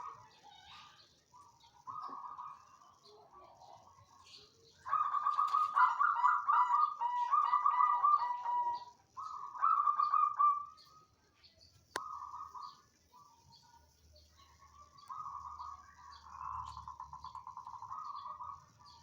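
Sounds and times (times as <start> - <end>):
dove cooing: 1.9 - 2.7, 4.8 - 10.8.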